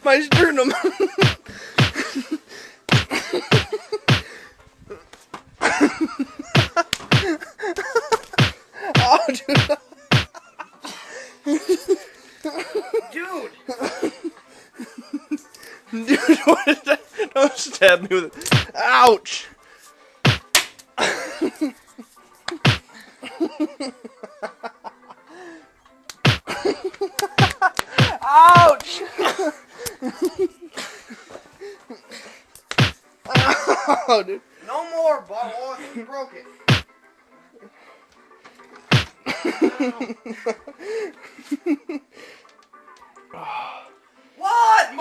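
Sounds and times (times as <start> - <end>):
people laughing: 0.4 - 4.3, 5.6 - 17.8, 21.0 - 25.3, 26.4 - 32.3, 33.3 - 34.3, 39.2 - 42.1
punch sound effects: 1.2 - 2.0, 2.9 - 4.2, 6.6 - 7.3, 8.4 - 10.3, 18.5 - 18.7, 20.3 - 20.5, 22.6 - 22.8, 26.2 - 26.5, 27.4 - 28.7, 32.8 - 33.5, 36.7 - 36.9, 38.9 - 39.1
small smacks: 26.1 - 26.5.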